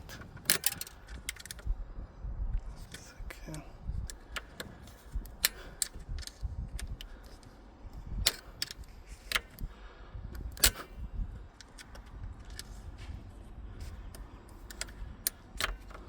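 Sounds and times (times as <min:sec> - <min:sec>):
plastic and metal parts clicking: 0:00.0 - 0:01.7, 0:04.0 - 0:07.6, 0:08.2 - 0:09.7, 0:10.4 - 0:13.0, 0:13.8 - 0:16.0.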